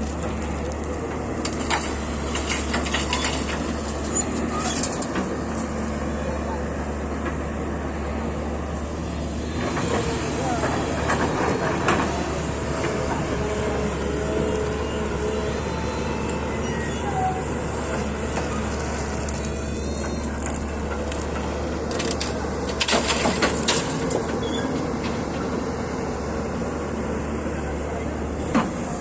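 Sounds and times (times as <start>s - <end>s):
diesel engine running: 0.0s - 29.0s
knocks and clatter: 20.3s - 25.5s.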